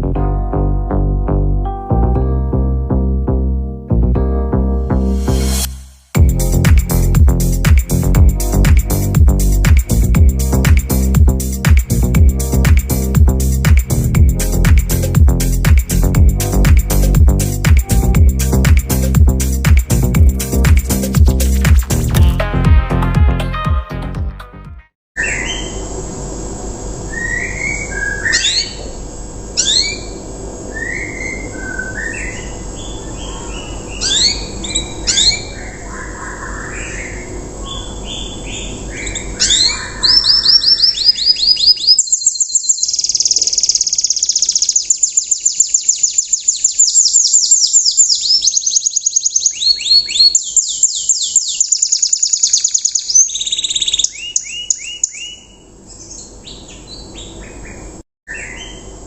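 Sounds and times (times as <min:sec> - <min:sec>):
canary singing: 0:27.1 - 0:29.0, 0:29.6 - 0:58.9.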